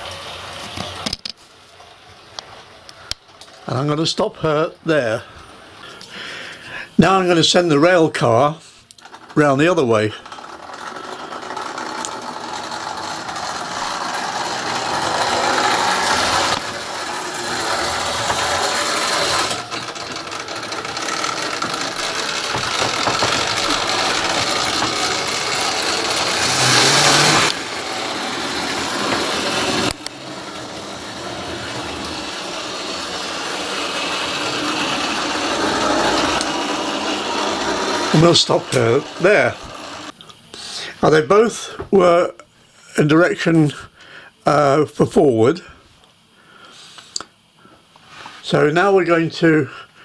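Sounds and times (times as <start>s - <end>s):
wheels rattling on rails: 9.0s - 40.1s
small electric motor whirring: 10.2s - 40.2s.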